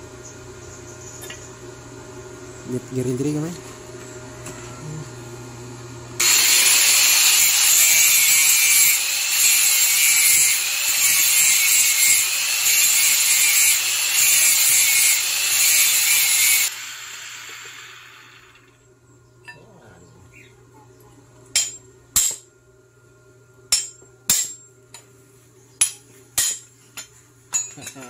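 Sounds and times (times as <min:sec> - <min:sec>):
angle grinder grinding: 0:06.2 - 0:18.8.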